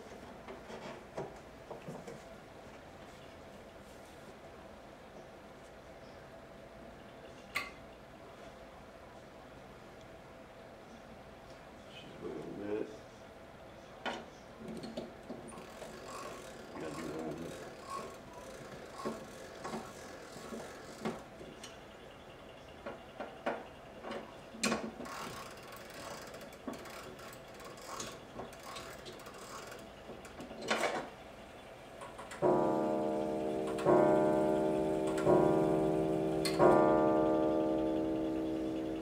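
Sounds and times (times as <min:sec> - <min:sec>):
clock movement clicks: 0:32.0 - 0:39.0
clock striking gong: 0:32.4 - 0:39.0.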